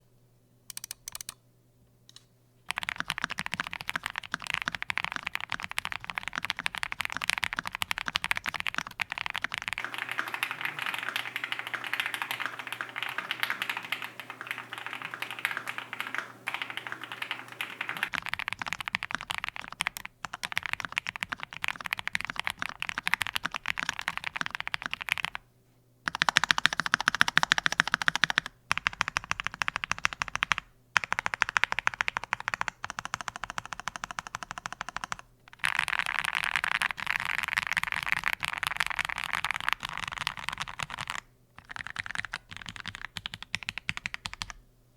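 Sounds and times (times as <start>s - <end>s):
mechanical keyboard typing: 0.7s - 1.4s, 2.7s - 25.4s, 27.6s - 44.6s.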